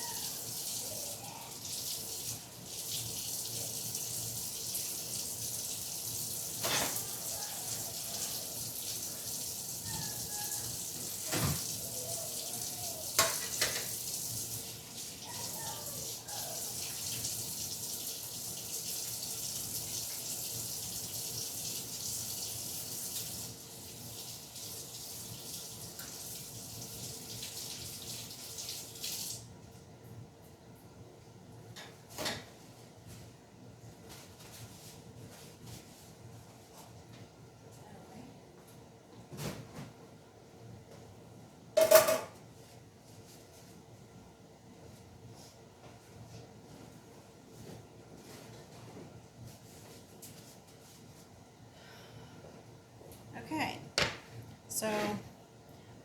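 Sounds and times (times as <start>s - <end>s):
tap water splashing: 11.0s - 11.8s, 13.1s - 14.2s
knocks against sink: 54.0s - 54.2s.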